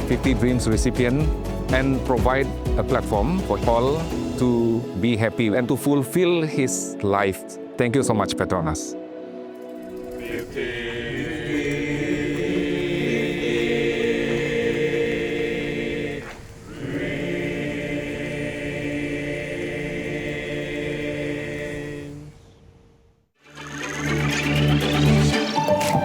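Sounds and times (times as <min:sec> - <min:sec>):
male choir singing: 0:09.9 - 0:22.4.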